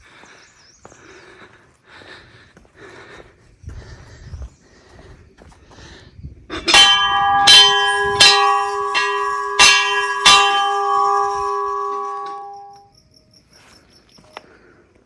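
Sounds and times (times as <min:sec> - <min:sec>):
temple bell ringing: 0:06.7 - 0:12.9.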